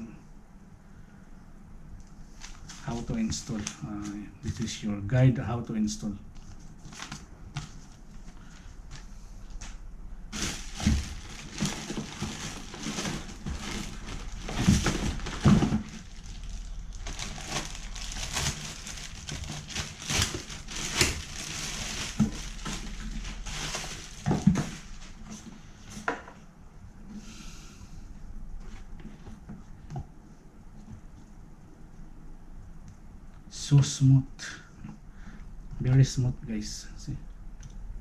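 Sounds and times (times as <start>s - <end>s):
packaging rustling and crinkling: 2.2s - 4.8s, 6.3s - 26.1s.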